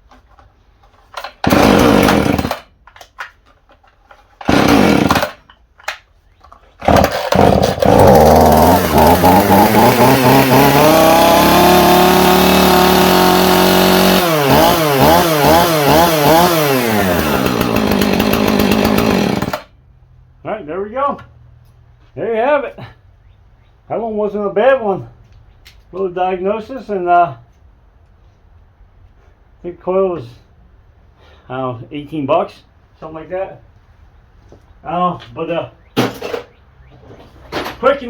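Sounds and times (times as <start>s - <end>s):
chainsaw starter cord pulls: 0.1s - 19.7s
chainsaw engine revving: 1.2s - 2.7s, 4.4s - 5.4s, 6.8s - 19.7s.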